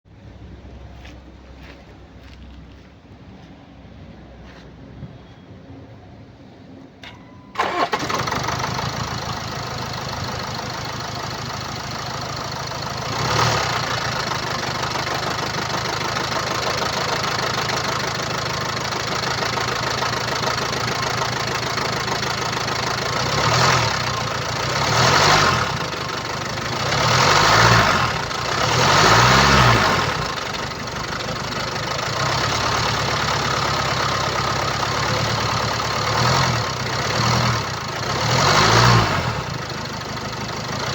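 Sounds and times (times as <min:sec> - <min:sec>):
diesel engine starting and idling: 0:06.8 - 0:40.9
engine revving: 0:07.6 - 0:30.8, 0:32.0 - 0:40.9.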